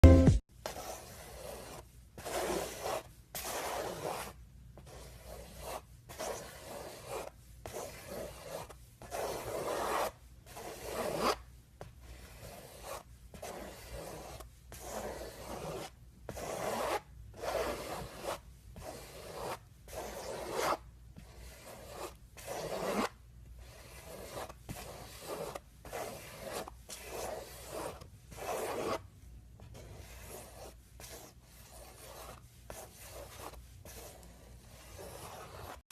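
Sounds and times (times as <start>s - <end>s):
scraping and rubbing strokes: 29.6s - 35.8s.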